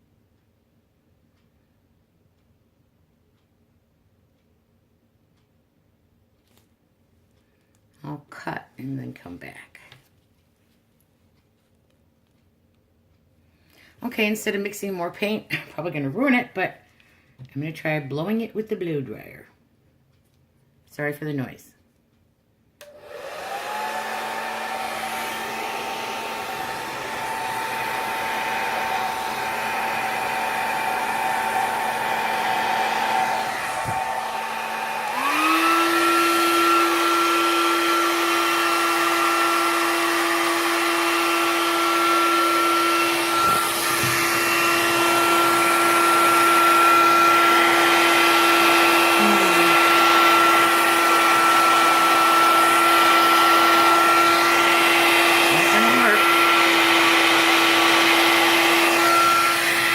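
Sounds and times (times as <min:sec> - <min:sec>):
blow dryer running: 0:22.8 - 0:59.9.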